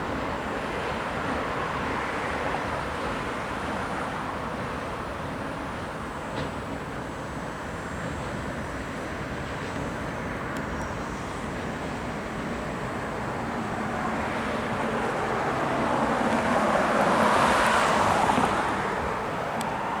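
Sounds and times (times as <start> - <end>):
road traffic passing: 9.3 - 20.0.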